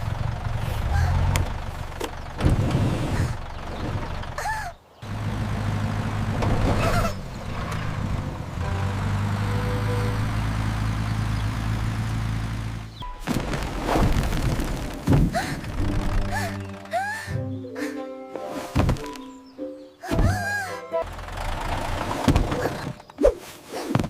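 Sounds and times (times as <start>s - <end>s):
low engine-like hum: 0.0s - 13.0s.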